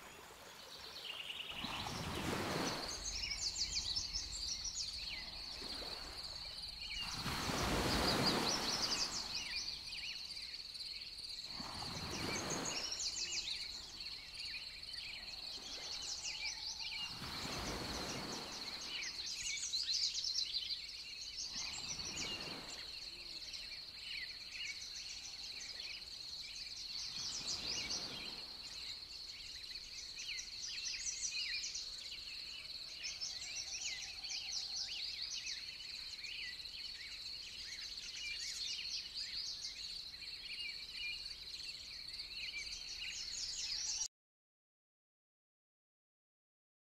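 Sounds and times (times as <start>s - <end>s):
birds chirping: 0.1s - 10.3s.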